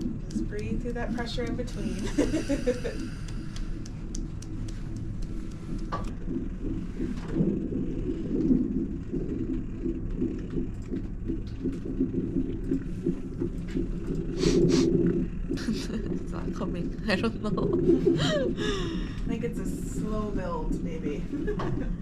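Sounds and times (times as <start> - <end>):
low rumbling room hum: 0.0 - 22.0
faint clicks: 2.9 - 7.4.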